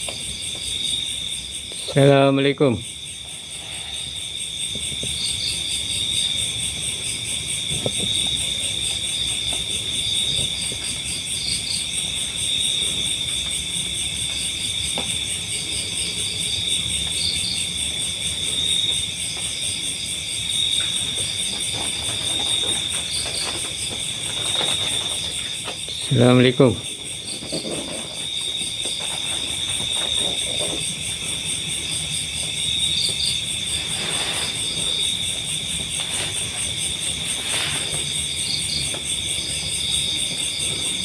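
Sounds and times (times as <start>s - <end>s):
insects trilling: 0.0s - 41.0s.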